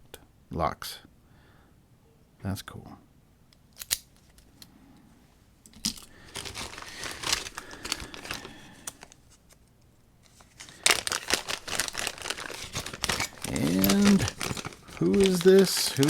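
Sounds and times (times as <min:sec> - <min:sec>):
plastic bags crinkling: 0:05.8 - 0:09.2, 0:10.2 - 0:16.0.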